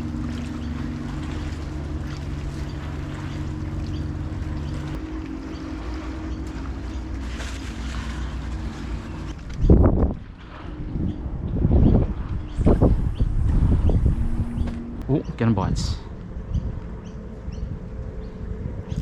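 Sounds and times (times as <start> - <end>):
boat engine humming: 0.0 - 19.0
wind noise on microphone: 9.2 - 15.1, 15.7 - 19.0.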